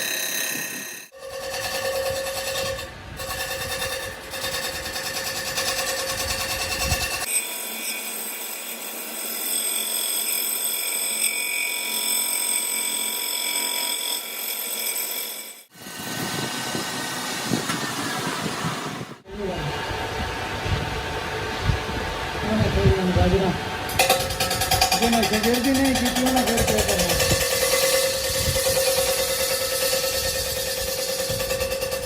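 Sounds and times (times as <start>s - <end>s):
power tool whining: 23.2s - 32.0s.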